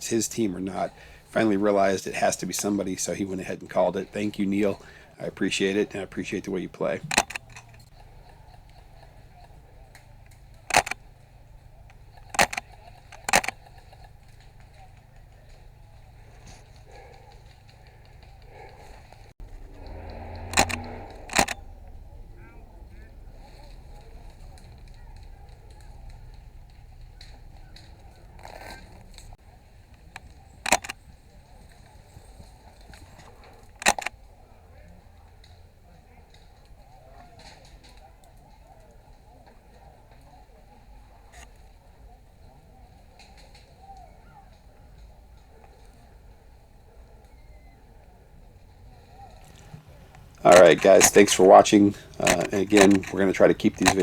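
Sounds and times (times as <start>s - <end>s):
airsoft rifle shots: 3.8s - 19.1s, 19.8s - 21.9s, 30.0s - 34.1s, 49.1s - 54.0s.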